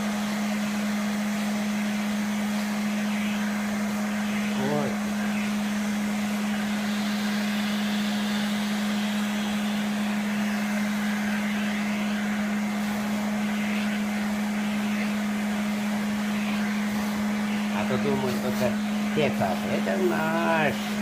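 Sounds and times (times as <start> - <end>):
vacuum cleaner motor running: 0.0 - 21.0.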